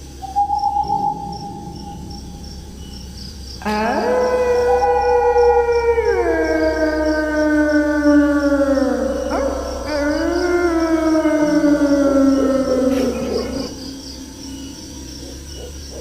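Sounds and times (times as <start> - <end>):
crickets chirping: 0.0 - 16.0
wolf howling: 0.3 - 16.0.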